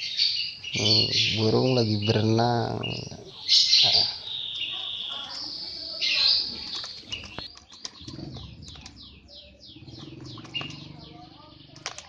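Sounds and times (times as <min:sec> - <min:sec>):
bird shrill chirps: 0:00.0 - 0:07.5.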